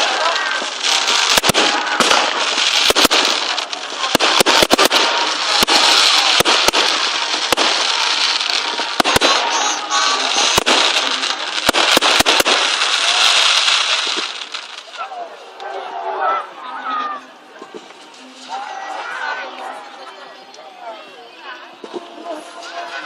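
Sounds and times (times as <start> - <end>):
fireworks bangs: 0.0 - 15.2
fireworks crackling: 0.0 - 15.8, 17.4 - 20.7, 21.8 - 23.0.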